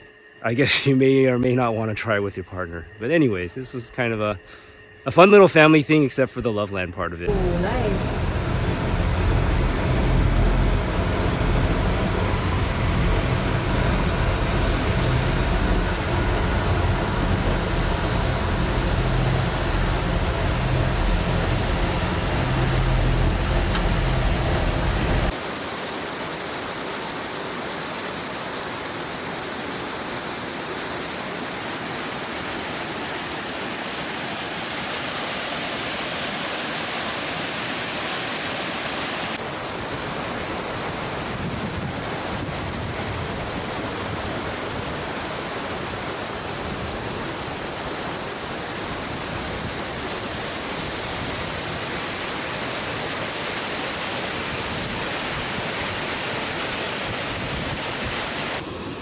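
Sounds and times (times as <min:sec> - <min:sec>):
low loud sound: 0:07.3 - 0:25.4
waterfall rushing: 0:07.3 - 0:59.0.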